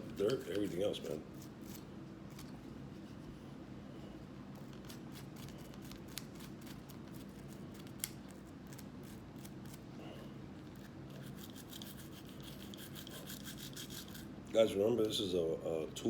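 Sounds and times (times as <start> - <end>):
scratchy scrubbing strokes: 11.1 - 14.3.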